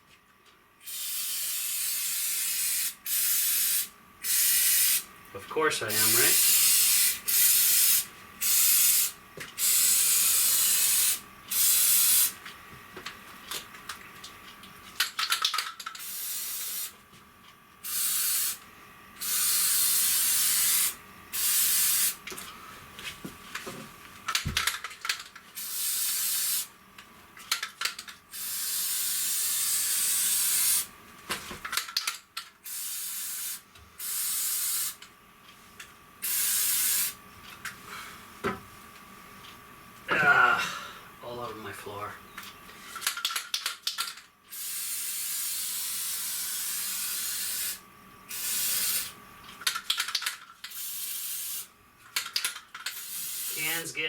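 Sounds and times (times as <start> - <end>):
aerosol can spraying: 0.8 - 5.1, 6.0 - 12.4, 16.0 - 17.0, 17.8 - 18.6, 19.2 - 22.2, 25.6 - 26.7, 28.3 - 30.9, 32.6 - 35.0, 36.2 - 37.2, 44.5 - 49.2, 50.7 - 51.7, 52.9 - 53.8.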